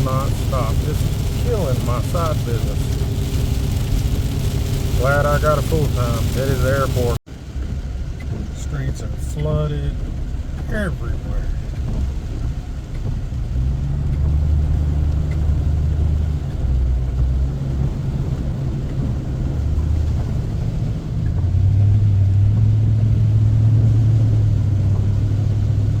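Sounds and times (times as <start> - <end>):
car engine humming: 0.0 - 26.0
road noise: 0.0 - 26.0.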